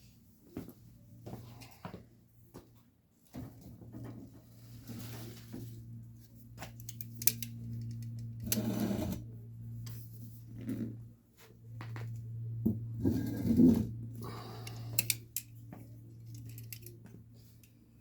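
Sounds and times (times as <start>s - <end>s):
steady low hum: 0.0s - 18.0s
metal latch parts clicking and rattling: 6.8s - 8.6s, 14.6s - 15.6s, 16.2s - 17.8s.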